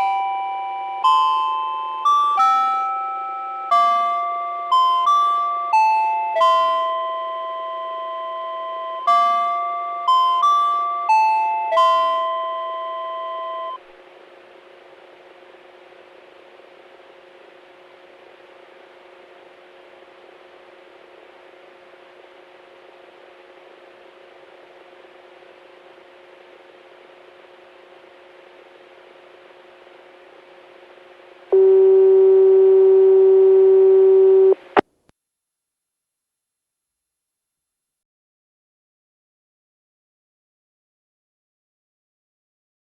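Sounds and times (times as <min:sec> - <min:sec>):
faint hums: 0:00.0 - 0:34.8
loud buzzing tone: 0:15.6 - 0:34.8.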